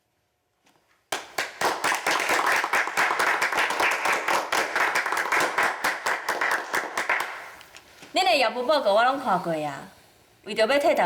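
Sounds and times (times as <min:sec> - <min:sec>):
group of people clapping: 0:01.1 - 0:07.7.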